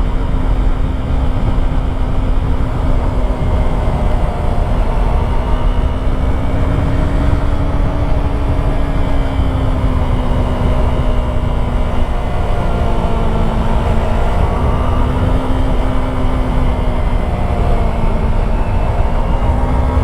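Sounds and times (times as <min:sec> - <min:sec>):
motorcycle engine cruising: 0:00.0 - 0:20.0
wind rush on microphone: 0:00.0 - 0:20.0.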